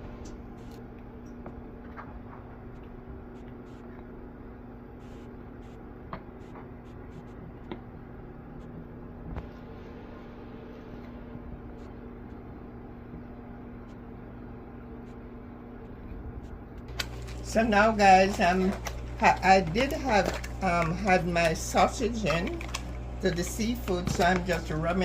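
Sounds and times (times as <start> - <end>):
steady low hum: 0.0 - 25.0
taps of food mixed in bowl: 16.9 - 25.0.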